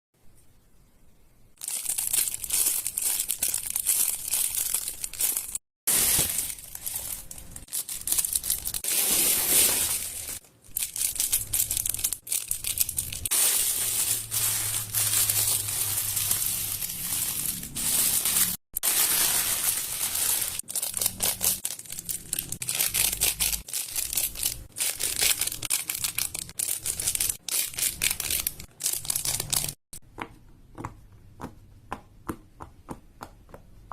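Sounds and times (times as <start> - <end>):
fidget toys crinkling and clicking: 1.6 - 5.6, 10.0 - 17.7, 18.3 - 29.8.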